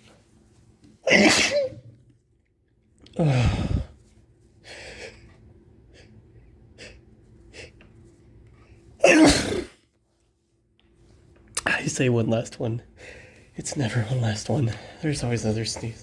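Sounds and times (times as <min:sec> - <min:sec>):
man sneezing: 0:01.0 - 0:01.9, 0:09.0 - 0:09.8.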